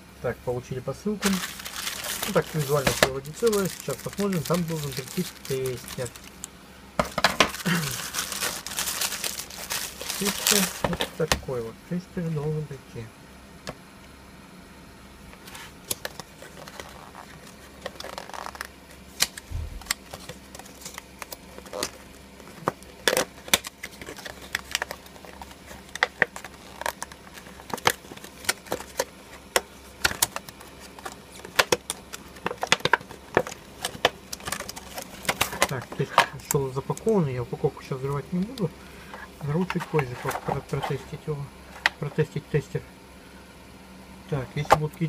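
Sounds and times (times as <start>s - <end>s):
plastic wrapping crinkling: 1.2s - 11.3s, 16.0s - 22.0s, 30.0s - 36.2s.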